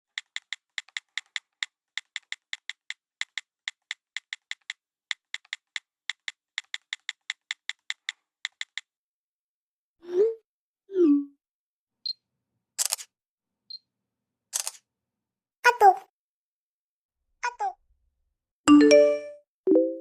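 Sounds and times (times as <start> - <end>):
phone keyboard taps: 0.1 - 8.9
rising notification tone: 18.7 - 20.0.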